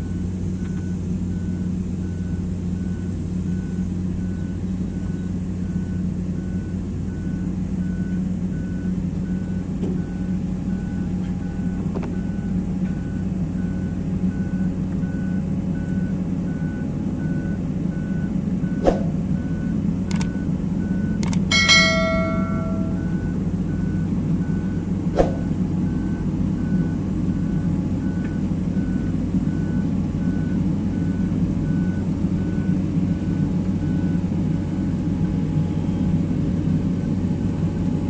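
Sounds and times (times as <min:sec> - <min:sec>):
excavator diesel engine running: 0:00.0 - 0:38.0
warning alarm beeping: 0:17.4 - 0:24.6
sharp metallic knocks: 0:21.5 - 0:23.2.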